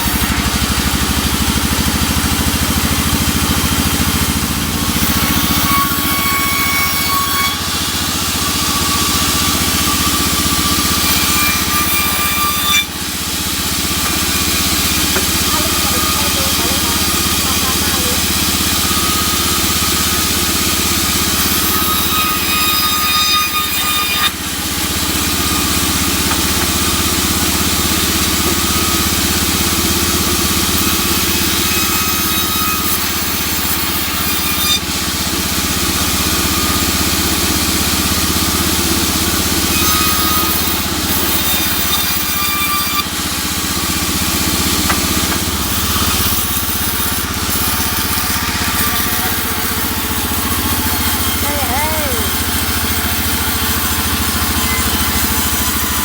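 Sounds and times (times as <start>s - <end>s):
sawmill machinery running: 0.0s - 56.0s
high machine whine: 51.0s - 56.0s.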